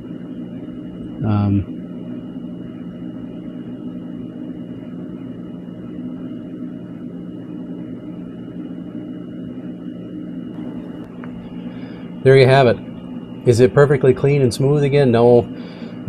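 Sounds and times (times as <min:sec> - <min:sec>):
steady mechanical hum: 0:00.0 - 0:16.0
thin high whine: 0:00.0 - 0:16.0.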